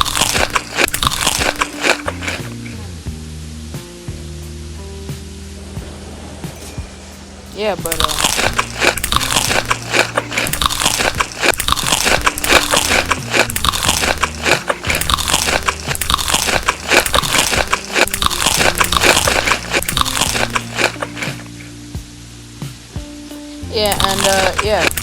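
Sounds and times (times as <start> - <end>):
crunching and chewing crispy food: 0.0 - 2.8, 7.8 - 21.7, 23.8 - 25.0.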